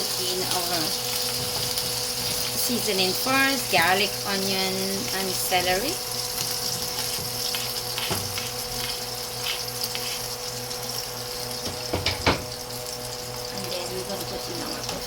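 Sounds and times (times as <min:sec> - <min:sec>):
water rushing in a pot: 0:00.0 - 0:15.0
utensil knocking: 0:01.3 - 0:02.6, 0:08.0 - 0:08.5, 0:11.6 - 0:12.5.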